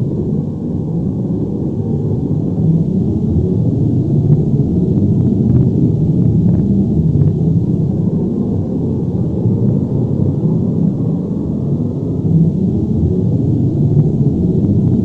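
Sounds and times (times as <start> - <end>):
deep rumble: 0.0 - 15.0.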